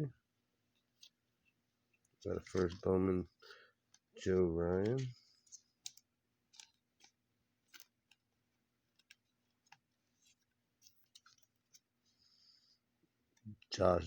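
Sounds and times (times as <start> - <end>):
trading cards flipped by hand: 2.0 - 3.1, 4.8 - 8.3, 8.9 - 11.9.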